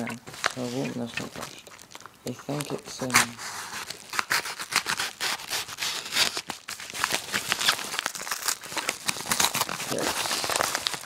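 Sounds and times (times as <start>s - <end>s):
packaging rustling and crinkling: 0.0s - 11.0s
package being cut and torn: 2.5s - 11.0s.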